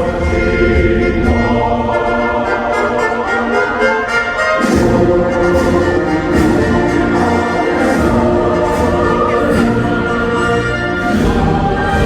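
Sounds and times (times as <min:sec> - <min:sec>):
brass-led orchestral music: 0:00.0 - 0:12.0.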